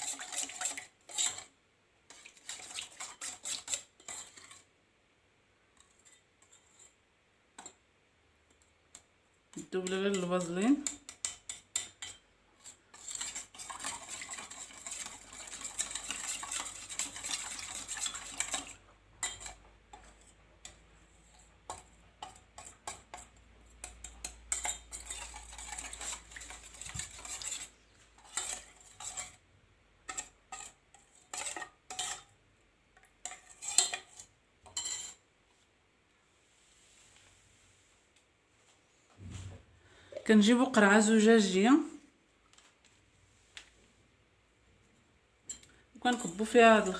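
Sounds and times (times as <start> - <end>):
metal spoon scraping a pan: 0.0 - 4.8, 5.7 - 7.0, 7.6 - 7.8, 8.6 - 32.4, 33.0 - 35.3, 45.4 - 46.9.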